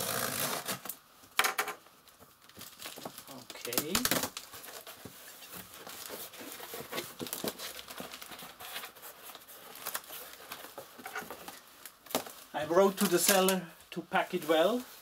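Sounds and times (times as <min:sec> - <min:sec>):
packing material crinkling: 0:02.0 - 0:15.0.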